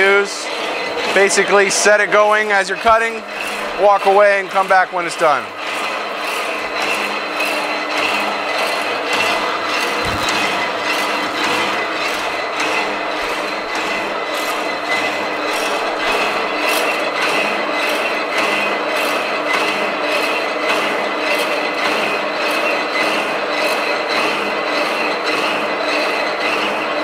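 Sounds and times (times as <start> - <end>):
electric motor hum: 5.5 - 18.4.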